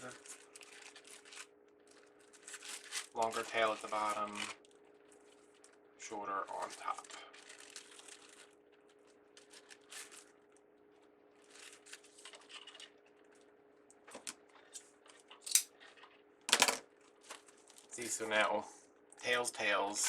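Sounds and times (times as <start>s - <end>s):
ribbon rustling and crinkling: 0.0s - 5.8s, 6.5s - 13.5s, 17.0s - 18.3s
faint steady hum: 0.0s - 20.0s.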